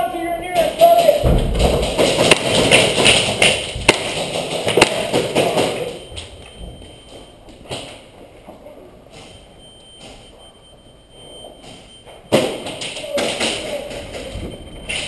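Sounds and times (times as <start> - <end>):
sharp clacks and thuds: 0.6 - 8.0.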